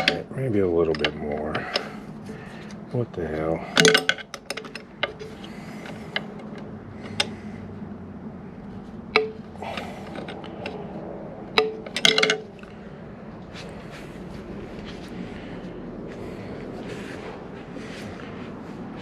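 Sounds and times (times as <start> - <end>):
tools clinking on metal: 0.0 - 2.0, 3.6 - 7.4, 9.1 - 10.8, 11.5 - 12.7.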